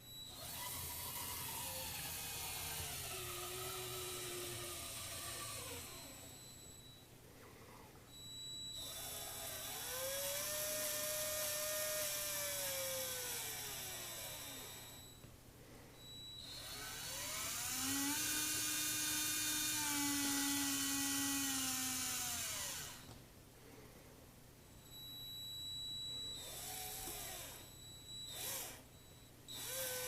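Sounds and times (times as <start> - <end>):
toy train motor whining: 0.3 - 6.4, 8.8 - 15.1, 16.1 - 23.1, 26.4 - 28.9, 29.5 - 30.0.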